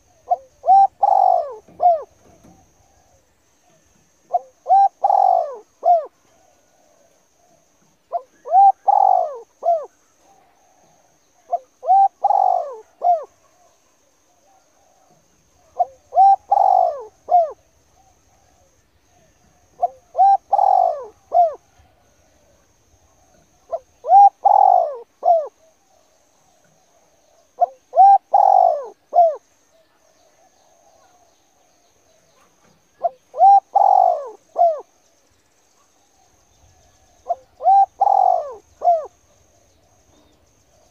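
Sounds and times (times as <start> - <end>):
dove cooing: 0.0 - 35.1, 36.2 - 40.9.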